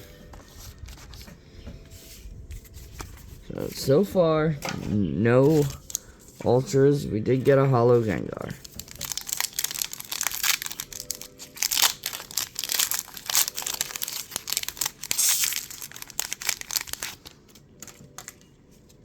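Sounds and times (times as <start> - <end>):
foil wrapper crinkling and tearing: 8.5 - 19.0.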